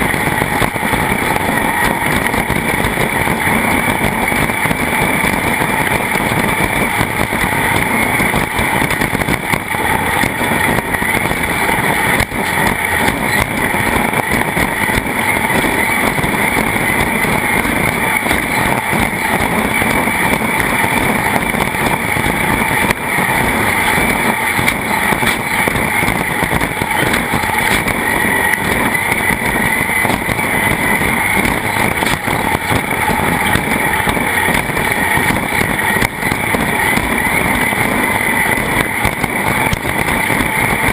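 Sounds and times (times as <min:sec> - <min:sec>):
vehicle noise: 0:00.0 - 0:40.9.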